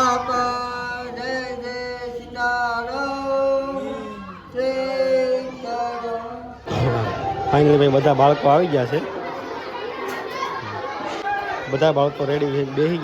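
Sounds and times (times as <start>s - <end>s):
devotional chant singing: 0.0s - 9.0s.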